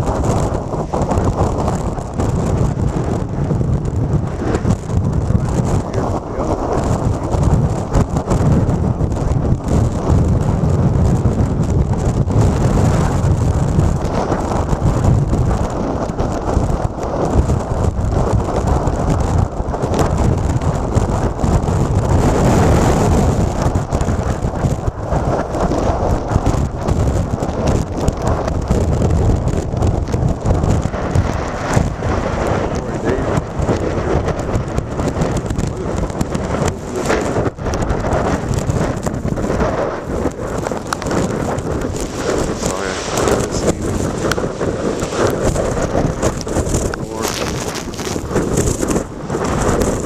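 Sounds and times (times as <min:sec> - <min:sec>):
gusty wind buffeting microphone: 0:00.0 - 0:50.0
heavy surf: 0:00.0 - 0:50.0
rain: 0:00.0 - 0:50.0.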